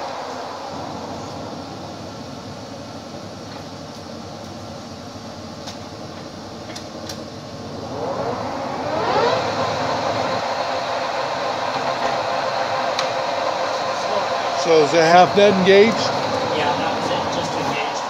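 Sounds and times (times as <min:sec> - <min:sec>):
lathe running with whine: 0:07.2 - 0:18.0.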